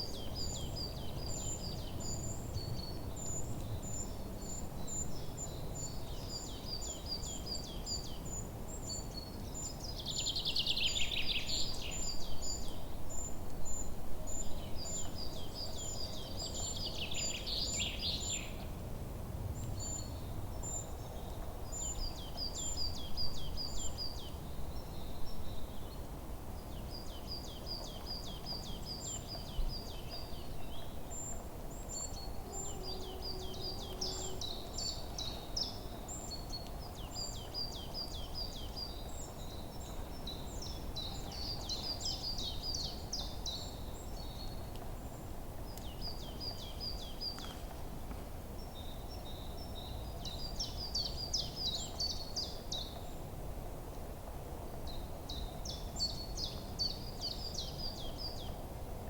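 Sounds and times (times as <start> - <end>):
wind rustling leaves: 0.0 - 59.0
bird chirping: 26.8 - 44.7.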